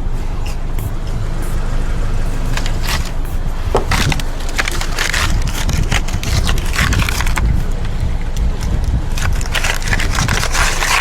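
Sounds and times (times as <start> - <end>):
car engine idling: 0.0 - 11.0
clicking and scraping on car body: 2.5 - 11.0.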